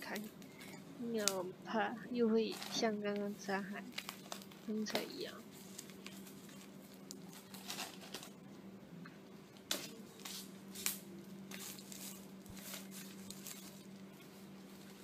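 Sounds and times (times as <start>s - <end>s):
faint steady hum: 0.0s - 15.0s
packaging rustling and crinkling: 2.4s - 8.4s, 9.7s - 15.0s.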